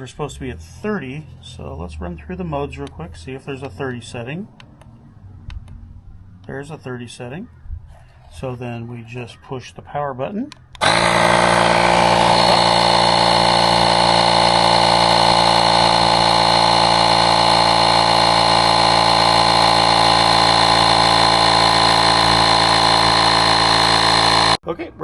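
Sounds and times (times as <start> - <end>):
tire inflator compressor buzzing: 10.7 - 24.6
thin high whine: 10.8 - 24.6.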